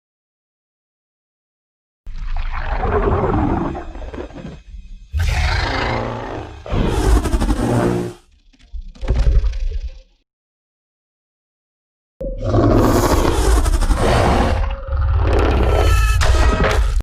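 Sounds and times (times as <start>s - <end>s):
monster roars: 5.1s - 8.2s, 12.3s - 16.1s.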